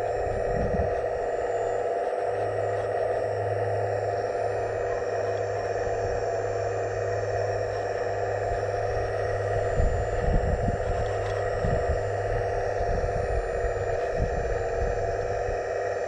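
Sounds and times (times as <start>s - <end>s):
low thumps and rumbles: 0.0s - 1.3s, 4.0s - 15.6s
hydraulic pump whine: 0.0s - 16.0s.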